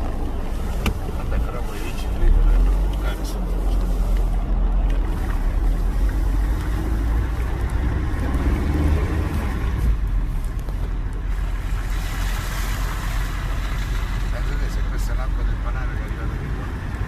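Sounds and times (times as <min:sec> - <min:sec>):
motor running with deep rumble: 0:00.0 - 0:13.2.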